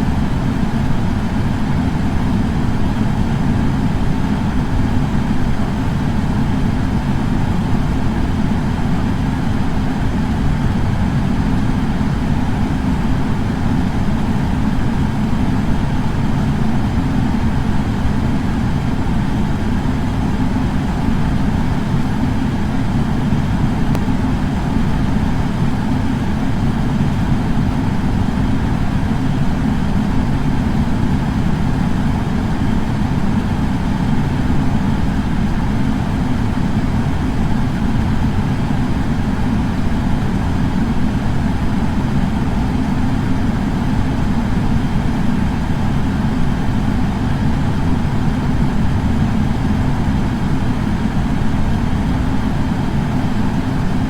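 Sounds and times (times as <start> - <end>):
air purifier fan humming: 0.0 - 54.0.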